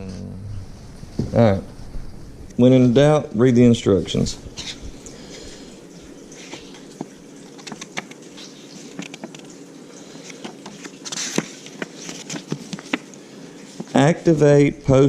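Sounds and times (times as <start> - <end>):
paper rustle: 6.2 - 14.4.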